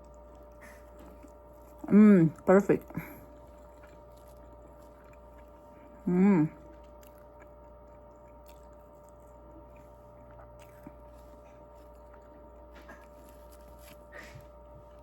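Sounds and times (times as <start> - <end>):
chewing soft cake: 0.0 - 15.0.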